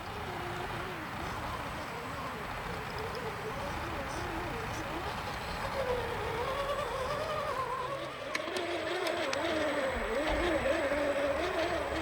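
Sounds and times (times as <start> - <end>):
electric motor whining: 0.0 - 12.0.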